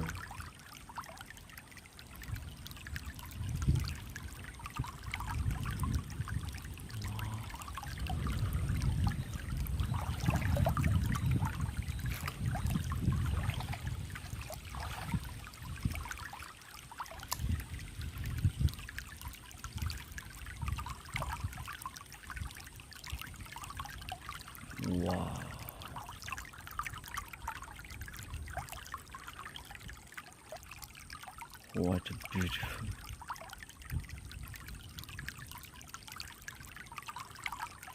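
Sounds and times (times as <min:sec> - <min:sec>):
stream trickling over stones: 0:00.0 - 0:37.9
low rumbles: 0:05.1 - 0:14.8.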